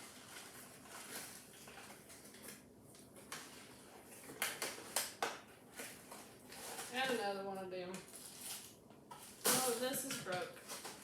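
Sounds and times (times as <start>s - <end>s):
packaging rustling: 0.0s - 7.4s, 8.0s - 11.0s
packaging clicks and crackles: 0.1s - 7.3s.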